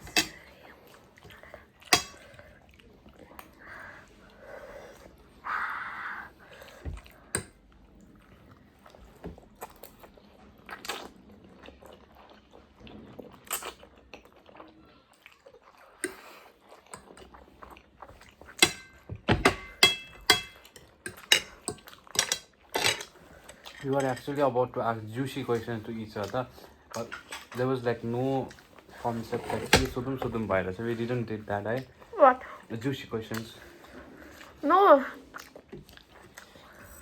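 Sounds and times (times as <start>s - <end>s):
utensils clinking against bowl: 0.0s - 0.5s, 1.3s - 2.4s, 18.6s - 24.5s, 27.0s - 27.9s
chewing and biting food: 6.7s - 18.6s, 35.2s - 36.8s.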